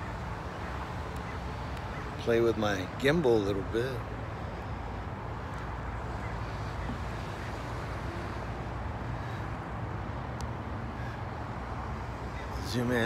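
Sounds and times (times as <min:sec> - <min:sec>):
low rumble of street traffic: 0:00.0 - 0:13.0.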